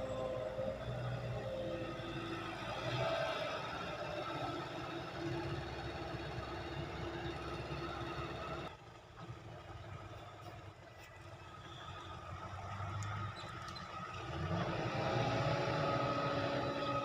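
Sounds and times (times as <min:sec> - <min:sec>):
heavy diesel machinery running: 0:00.0 - 0:08.7.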